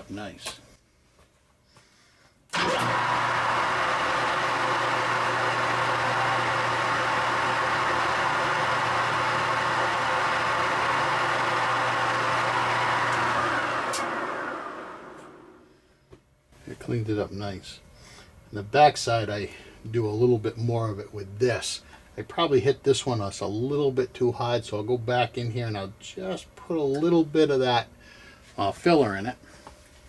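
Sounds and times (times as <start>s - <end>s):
polishing wheel motor running: 2.6s - 15.7s.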